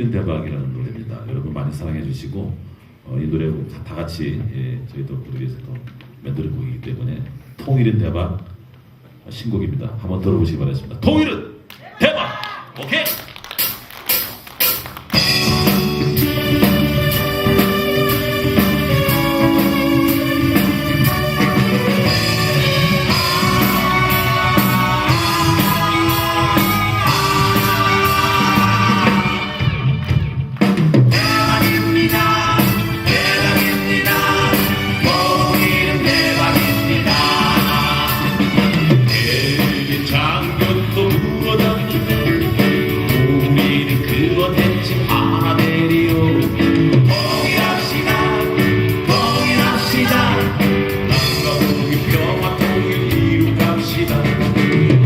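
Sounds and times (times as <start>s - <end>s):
drums: 12.5s - 55.0s
keyboard: 15.2s - 55.0s.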